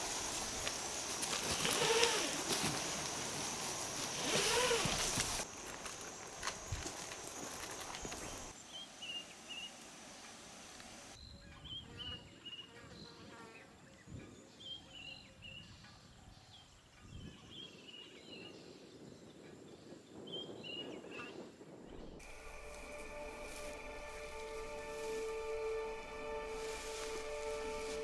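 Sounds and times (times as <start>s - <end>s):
soft low rustles: 0.0s - 5.4s, 22.2s - 28.0s
high falling chirps: 22.2s - 28.0s.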